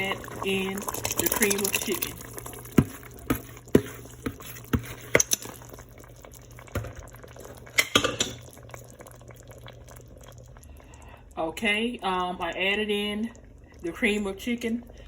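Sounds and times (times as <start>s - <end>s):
faint bubbling: 0.0s - 15.0s.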